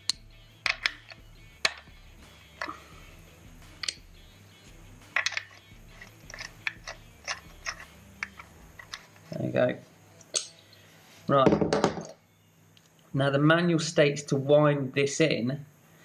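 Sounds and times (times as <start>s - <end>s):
metallic tool clicks and taps: 0.0s - 2.8s, 3.8s - 4.0s, 5.1s - 9.0s, 10.2s - 10.6s
low steady hum: 0.0s - 16.0s.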